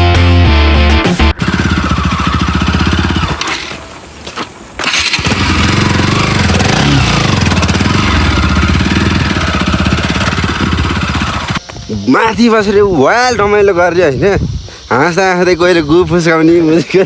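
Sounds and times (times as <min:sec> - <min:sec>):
motorcycle engine running: 0:01.4 - 0:11.7.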